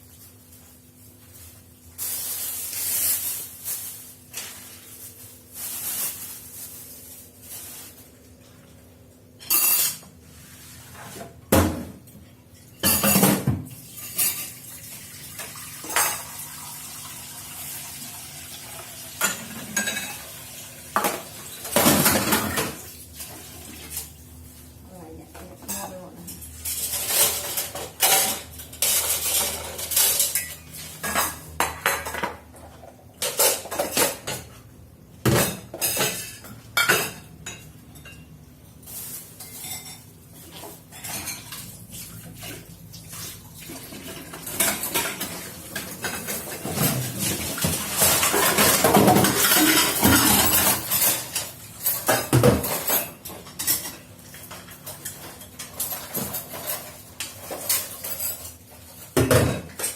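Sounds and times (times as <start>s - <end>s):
dishes and cutlery clattering: 9.4s - 10.1s, 10.9s - 16.6s, 19.1s - 22.9s, 25.6s - 34.6s, 35.2s - 38.3s, 39.1s - 59.9s.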